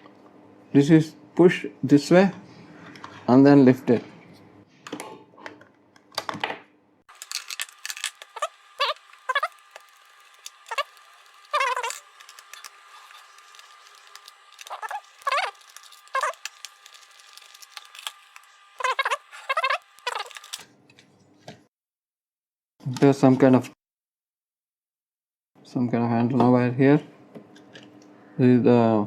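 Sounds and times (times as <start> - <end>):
plastic clicks and creaks: 7.1 - 20.6.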